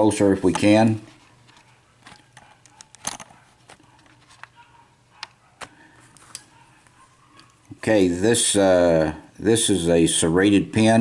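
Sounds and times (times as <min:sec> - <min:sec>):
small lock pins clicking: 0:02.2 - 0:03.4.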